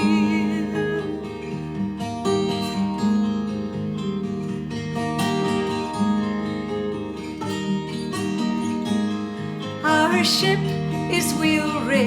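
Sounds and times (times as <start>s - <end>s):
acoustic guitar playing: 0.0s - 12.0s.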